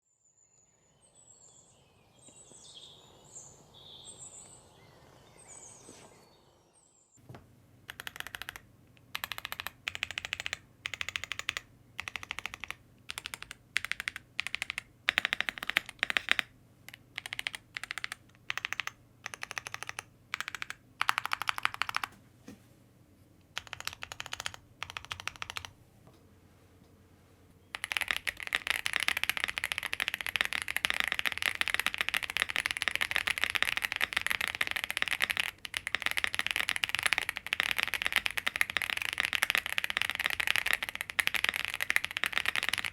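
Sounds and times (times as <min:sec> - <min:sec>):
mechanical keyboard typing: 0:07.9 - 0:22.2, 0:23.5 - 0:25.8, 0:27.7 - 0:42.9.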